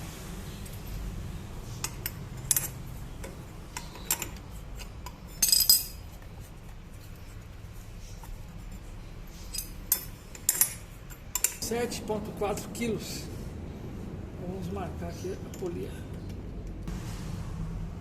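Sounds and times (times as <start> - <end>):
metal parts clinking: 3.8 - 6.2, 9.4 - 11.6.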